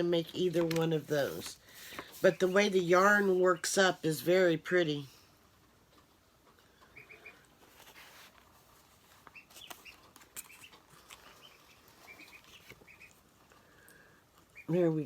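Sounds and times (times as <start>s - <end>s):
ducklings peeping: 0.8s - 4.6s, 5.9s - 7.7s, 9.2s - 13.4s, 14.2s - 15.0s.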